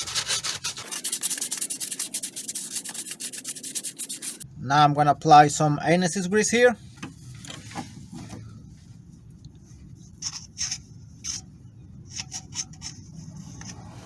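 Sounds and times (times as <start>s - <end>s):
brush scraping and dabbing: 0.0s - 4.4s
low steady hum: 0.0s - 14.0s.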